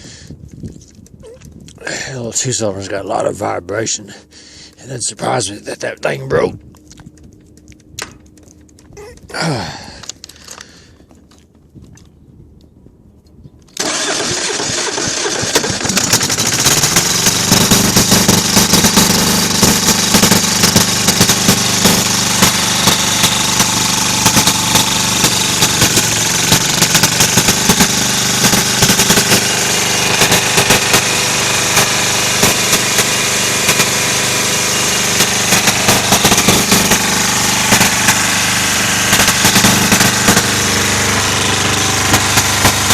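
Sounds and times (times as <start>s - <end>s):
starter falling whine: 13.6s - 42.9s
diesel engine clattering: 13.8s - 42.9s.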